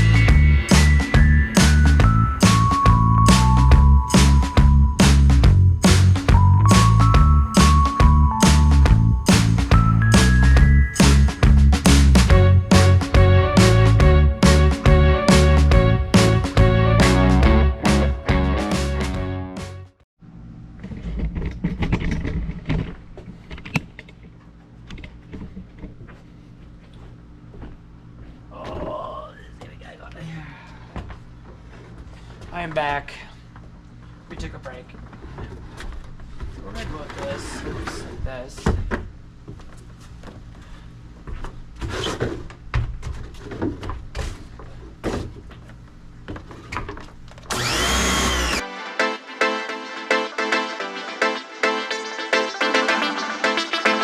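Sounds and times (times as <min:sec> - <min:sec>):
background music: 0:00.0 - 0:20.0, 0:47.6 - 0:54.0.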